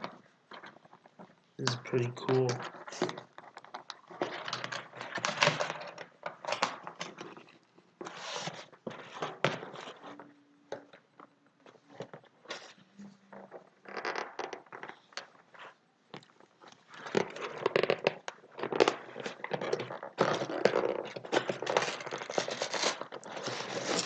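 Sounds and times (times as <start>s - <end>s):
packaging tearing and crinkling: 20.3s - 24.0s.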